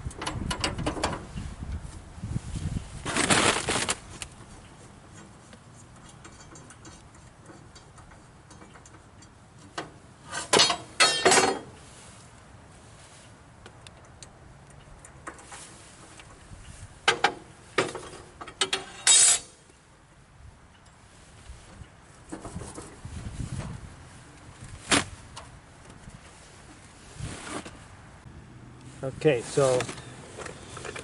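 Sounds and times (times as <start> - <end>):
metal clinking and scraping: 5.1 - 11.8, 17.1 - 19.6
rattling metal clanks: 5.9 - 11.8.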